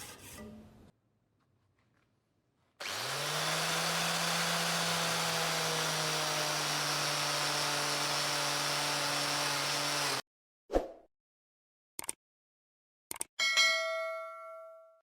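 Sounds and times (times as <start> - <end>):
power tool grinding: 2.8 - 10.2.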